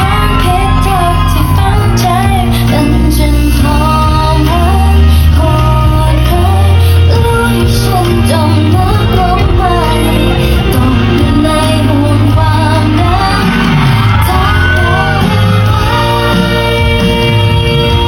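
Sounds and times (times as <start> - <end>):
pop song with singing: 0.0 - 18.0.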